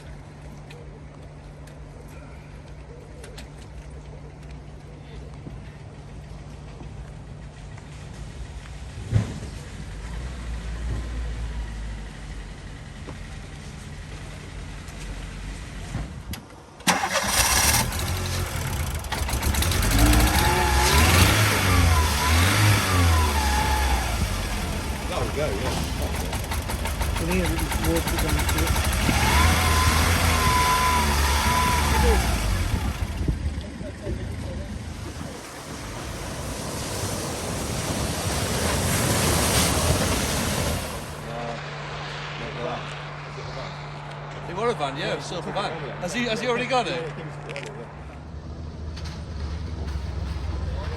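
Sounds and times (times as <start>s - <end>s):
vehicle engine rumbling: 0.0s - 50.9s
engine revving: 16.9s - 35.4s
water rushing and splashing: 18.2s - 33.3s, 34.7s - 41.4s
hiss: 35.3s - 41.2s.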